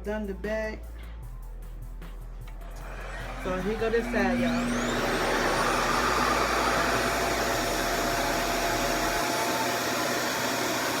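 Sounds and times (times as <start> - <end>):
hair dryer running: 2.6 - 11.0.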